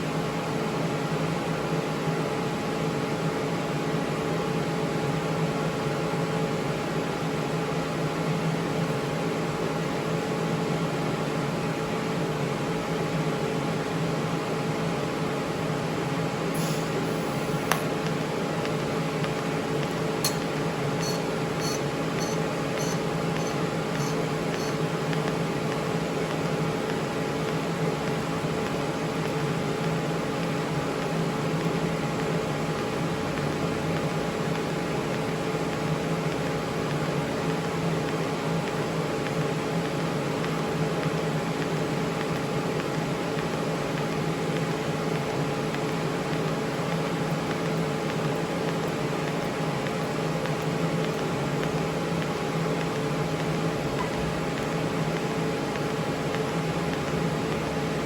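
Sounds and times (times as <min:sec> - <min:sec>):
welder humming with hiss: 0:16.5 - 0:25.4.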